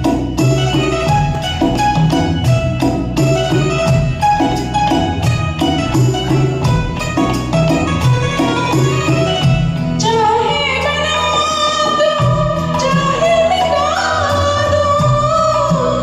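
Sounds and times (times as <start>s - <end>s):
instrumental backing music: 0.0s - 16.0s
woman singing: 9.4s - 16.0s.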